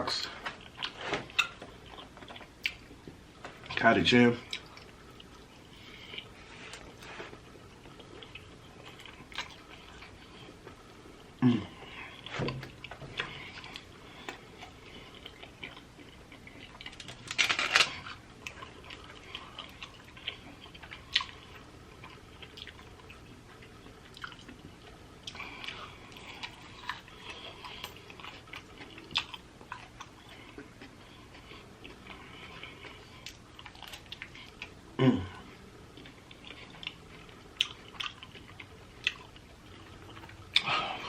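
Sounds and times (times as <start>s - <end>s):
person chewing food: 0.1s - 3.8s, 4.4s - 41.0s.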